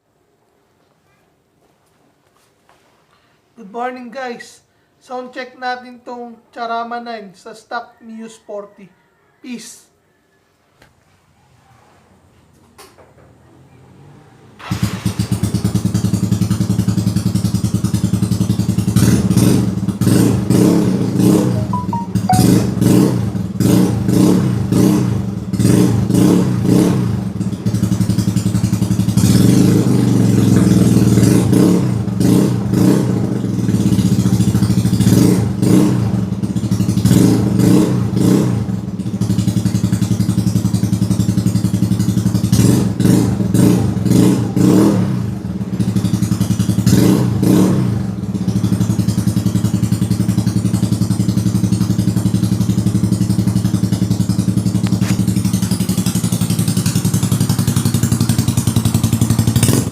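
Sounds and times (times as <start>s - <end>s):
scooter engine revving: 13.8s - 21.7s, 22.7s - 59.9s.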